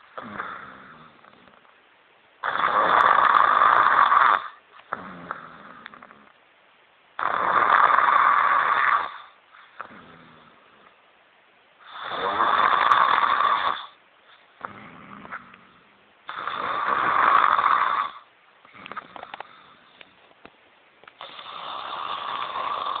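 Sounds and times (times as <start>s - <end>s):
crackly breaths: 0.0s - 1.8s, 3.7s - 6.5s, 8.8s - 11.1s, 13.6s - 23.0s
woman snoring: 0.2s - 1.6s, 2.4s - 6.3s, 7.2s - 10.8s, 11.9s - 14.0s, 14.6s - 20.0s, 21.2s - 23.0s.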